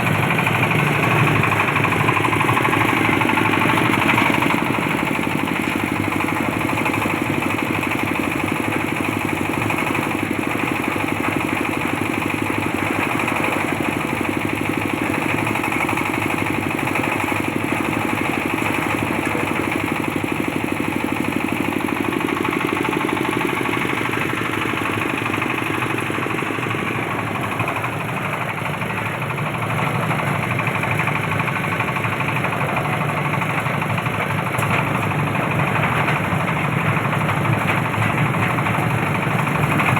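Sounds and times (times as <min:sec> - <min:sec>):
threshing machine engine running: 0:00.0 - 0:39.9.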